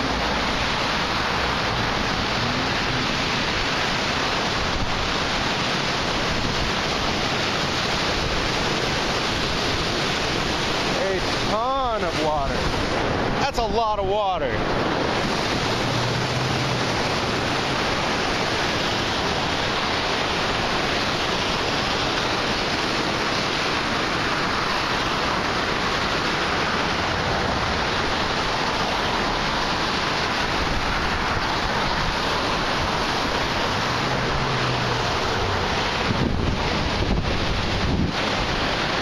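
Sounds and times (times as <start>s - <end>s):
floodwater rushing through spillway: 0.0s - 39.0s.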